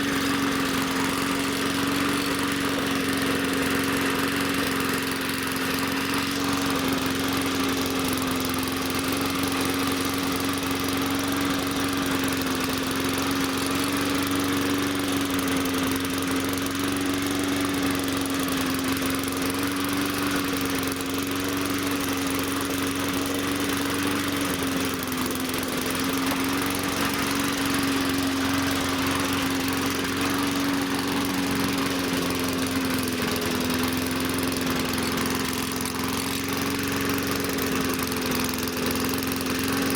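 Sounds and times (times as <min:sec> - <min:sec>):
small engine running: 0:00.0 - 0:39.9.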